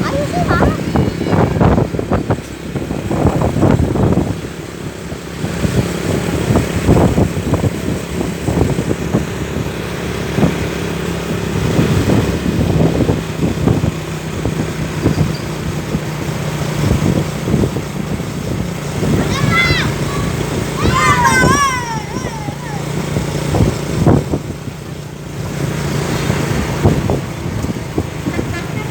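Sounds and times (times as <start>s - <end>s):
rumbling traffic noise: 0.0s - 28.9s
vehicle engine humming: 0.0s - 28.9s.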